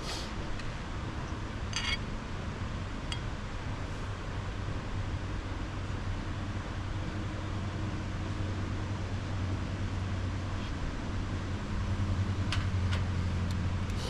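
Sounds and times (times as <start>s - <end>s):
light clink: 1.7s - 2.0s.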